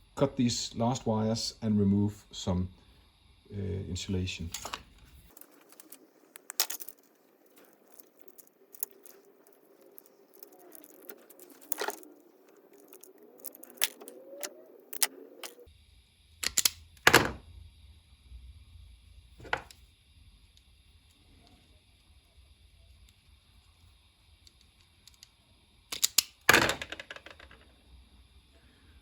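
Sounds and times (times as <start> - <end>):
wire cutters clicking and snipping: 4.5 - 15.7.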